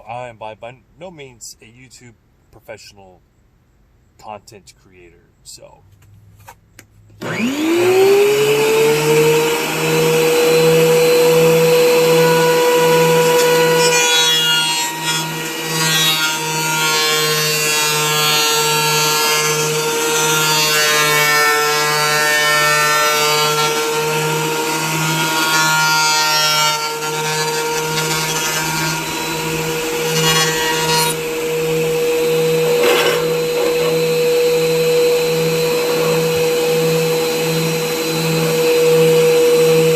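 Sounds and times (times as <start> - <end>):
planer cutting board: 7.2 - 39.9
planer motor whining: 7.2 - 39.9.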